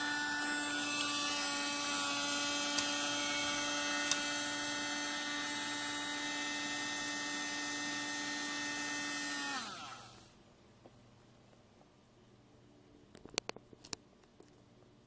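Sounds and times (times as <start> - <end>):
vacuum cleaner motor whining: 0.0 - 10.4.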